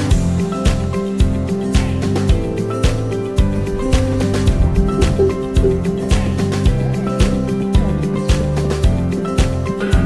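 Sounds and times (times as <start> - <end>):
background music with steady beat: 0.0 - 10.0.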